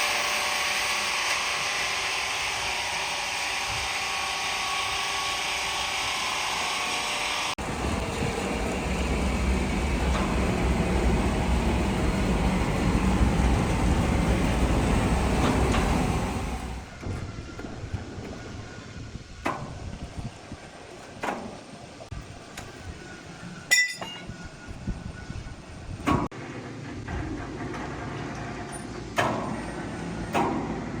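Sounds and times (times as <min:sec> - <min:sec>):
heavy machinery rumbling: 0:07.6 - 0:17.9
sharp metallic clink: 0:23.7 - 0:24.4.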